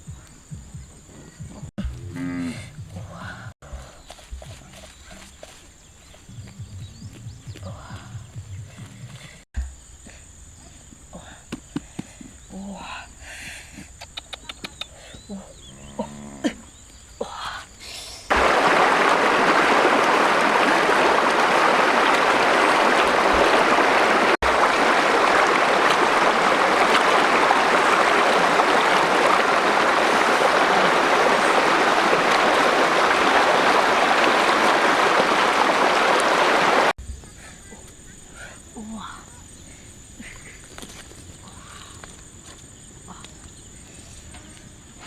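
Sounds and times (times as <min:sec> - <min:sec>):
water rushing: 0:18.3 - 0:37.0.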